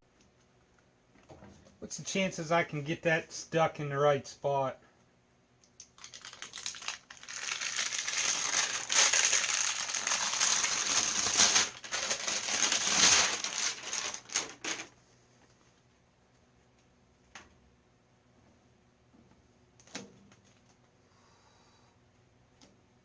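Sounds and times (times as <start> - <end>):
foil sheet crinkling and crackling: 6.0 - 15.0.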